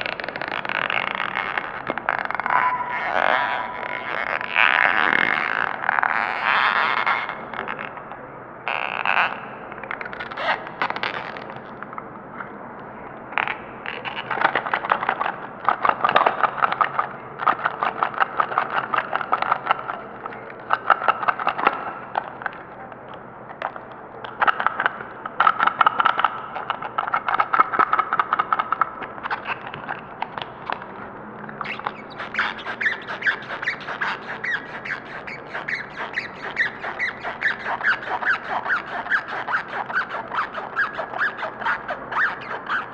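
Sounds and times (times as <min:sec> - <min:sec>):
high-pitched squealing: 0:00.0 - 0:07.5, 0:31.6 - 0:42.9.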